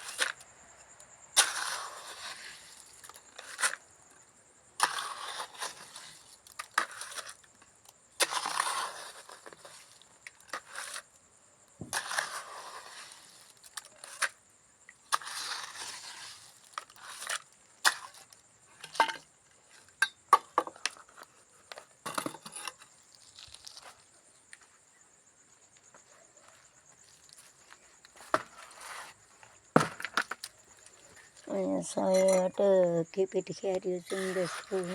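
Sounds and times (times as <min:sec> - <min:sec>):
trowel scraping cement: 0:01.4 - 0:03.8, 0:04.8 - 0:07.5, 0:08.2 - 0:11.1, 0:11.8 - 0:14.4, 0:15.1 - 0:19.0, 0:28.2 - 0:29.2, 0:34.0 - 0:34.9.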